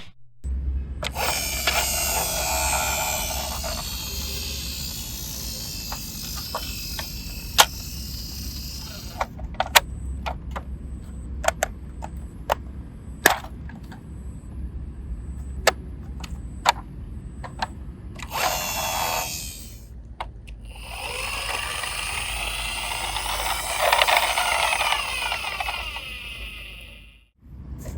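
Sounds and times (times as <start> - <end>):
toy car wheels whirring: 1.0 - 9.9, 17.5 - 27.3.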